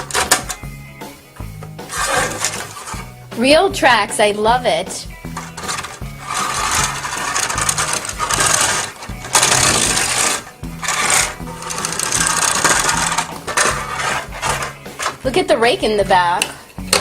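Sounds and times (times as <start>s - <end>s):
toy bulldozer tracks clattering: 0.0s - 0.6s, 1.6s - 3.1s, 5.4s - 15.3s.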